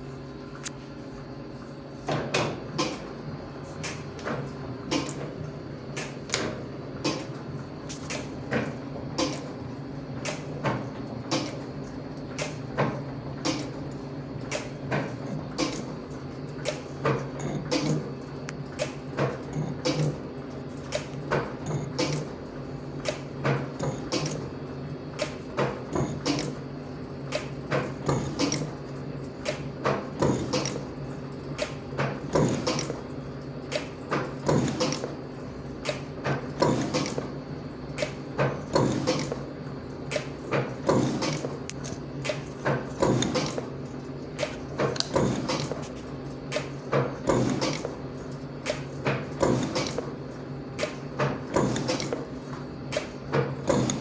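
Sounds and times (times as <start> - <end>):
machine motor hum: 0.0 - 54.0.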